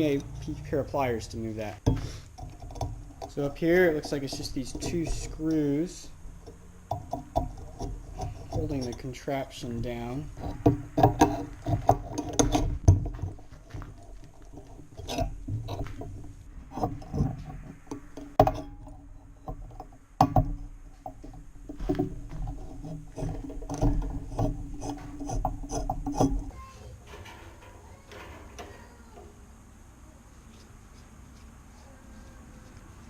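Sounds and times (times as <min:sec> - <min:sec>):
hand tool clicking and rattling: 0:01.8 - 0:26.5.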